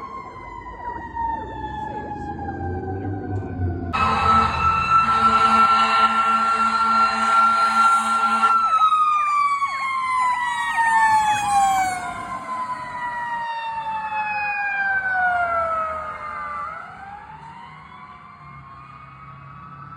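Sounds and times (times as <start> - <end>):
mechanical siren wailing: 0.0 - 19.9
electronic siren yelping: 3.9 - 18.8
horn blasting: 4.0 - 8.7.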